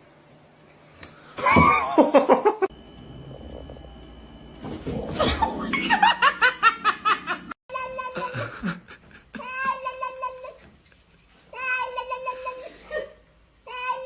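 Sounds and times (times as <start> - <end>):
person laughing: 1.4 - 2.7, 5.8 - 10.5.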